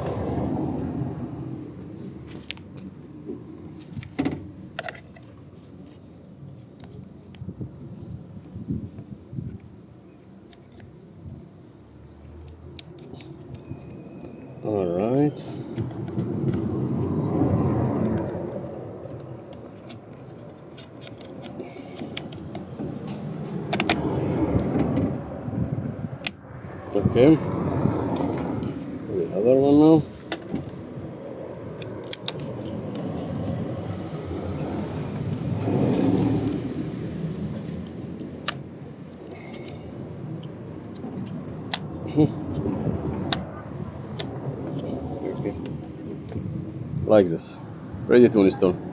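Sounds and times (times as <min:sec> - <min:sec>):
sharp clicks and knocks of parts: 0:19.1 - 0:24.0, 0:31.8 - 0:33.6.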